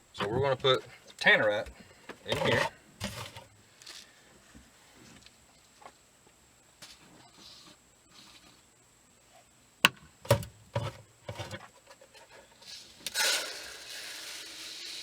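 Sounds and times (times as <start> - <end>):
containers knocking and clicking: 1.6 - 3.5, 9.9 - 12.0
beads pouring into a container: 12.7 - 15.0.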